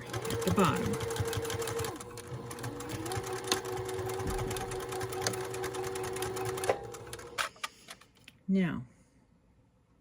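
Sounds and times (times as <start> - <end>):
sewing machine running: 0.0 - 7.5.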